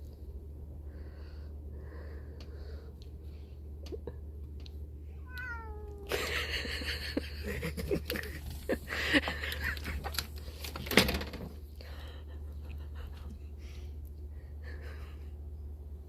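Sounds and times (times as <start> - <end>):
kitten meowing: 5.2 - 6.1
rustling and scuffling: 8.0 - 11.6.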